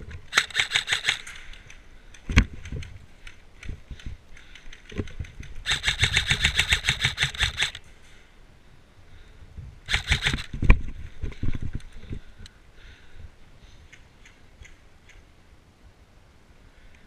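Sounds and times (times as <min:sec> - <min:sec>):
airsoft rifle firing bursts: 0:00.3 - 0:01.5, 0:05.6 - 0:07.8, 0:09.9 - 0:10.6.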